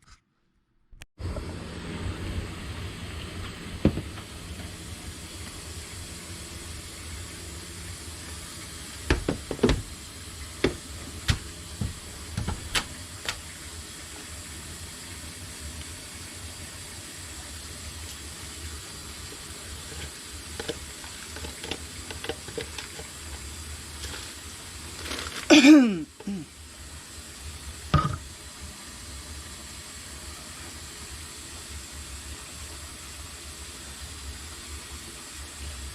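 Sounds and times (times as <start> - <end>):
stick vacuum running: 1.2 - 16.9, 17.7 - 26.5.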